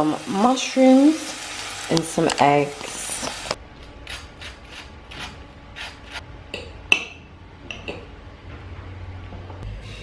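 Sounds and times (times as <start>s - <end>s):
frying sizzle: 0.0s - 3.6s
kitchen utensil scraping: 4.0s - 6.2s.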